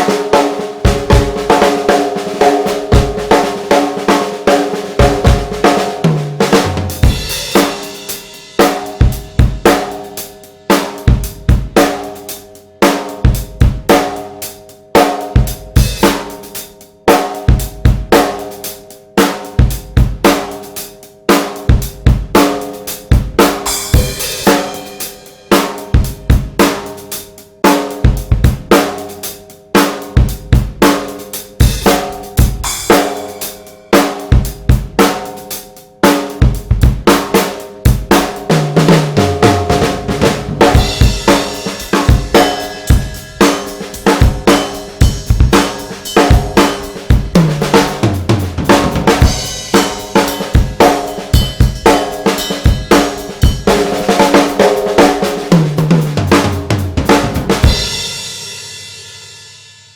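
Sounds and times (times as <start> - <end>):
snare drum crack: 38.1 - 57.7.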